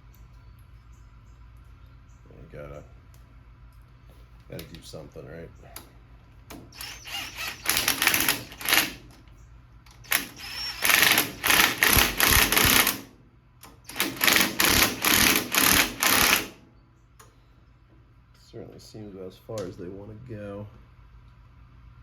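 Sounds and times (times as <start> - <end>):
impact wrench hammering: 13.9 - 16.6.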